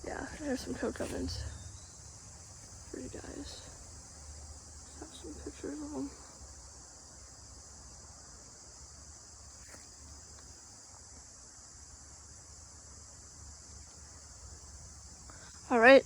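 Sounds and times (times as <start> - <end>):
high-pitched insect chorus: 0.0 - 16.0
low rumble: 0.6 - 3.9.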